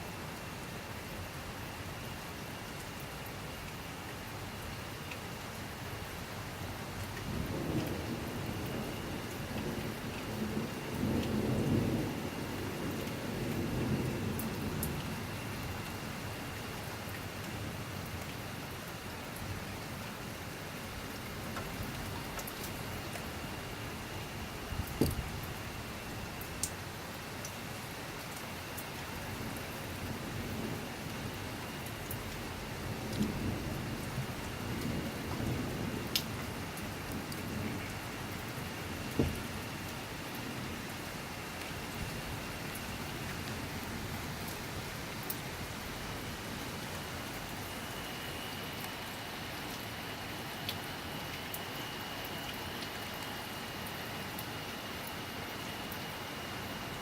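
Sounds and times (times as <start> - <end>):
steady rain falling: 0.0 - 57.0
distant thunder rumble: 7.2 - 15.5, 29.4 - 41.0
sharp drips ticking: 21.0 - 56.8.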